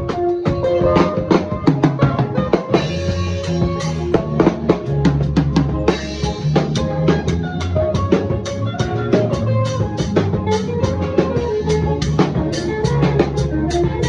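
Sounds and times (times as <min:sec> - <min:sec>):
drum kit playing: 0:00.0 - 0:14.0
keyboard notes: 0:00.0 - 0:14.0
sustained bass notes: 0:00.0 - 0:14.0.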